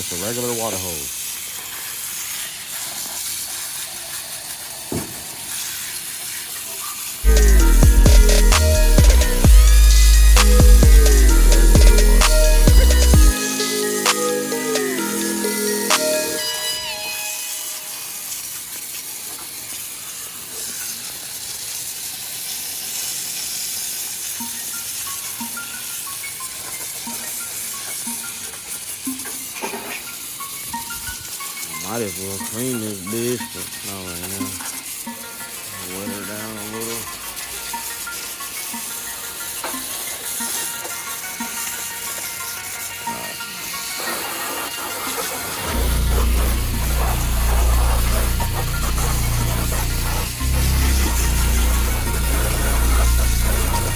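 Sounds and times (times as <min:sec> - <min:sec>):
water spraying from garden hose: 0:00.0 - 0:53.9
electronic music with heavy bass: 0:07.2 - 0:17.1, 0:45.6 - 0:53.9.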